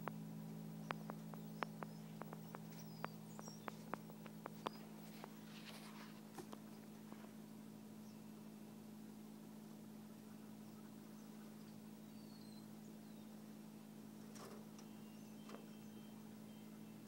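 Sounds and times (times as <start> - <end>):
steady low hum: 0.0 - 17.0
high bird chirps: 0.8 - 5.4, 10.3 - 13.4, 14.7 - 17.0
sharp clicks and taps: 0.9 - 4.8.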